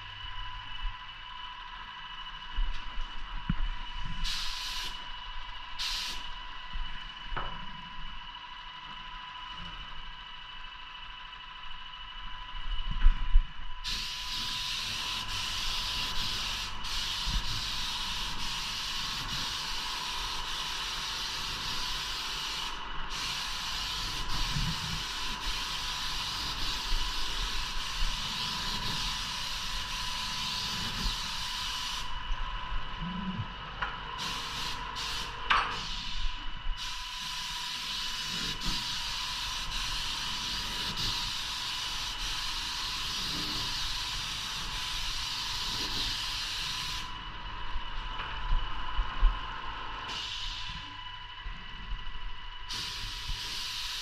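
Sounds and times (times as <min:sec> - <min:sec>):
faint steady whine: 0:00.0 - 0:54.0
paint spray gun hissing: 0:04.2 - 0:05.1, 0:05.8 - 0:06.4, 0:13.8 - 0:32.2, 0:34.2 - 0:47.2, 0:50.1 - 0:50.9, 0:52.7 - 0:54.0.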